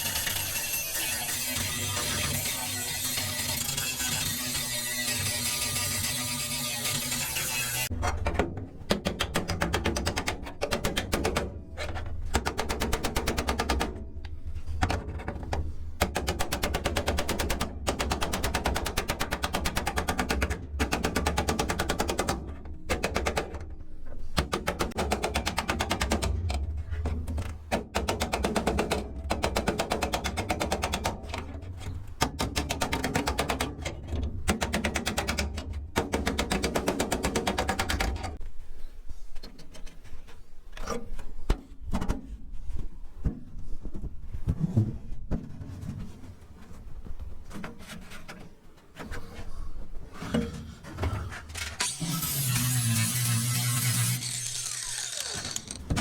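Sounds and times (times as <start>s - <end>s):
power tool working sheet metal: 0.0s - 7.9s, 51.8s - 56.0s.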